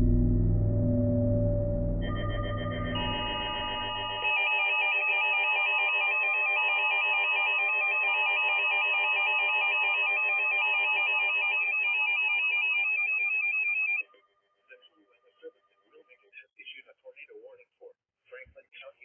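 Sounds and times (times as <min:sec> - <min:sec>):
electronic alert tone: 0:00.0 - 0:08.6.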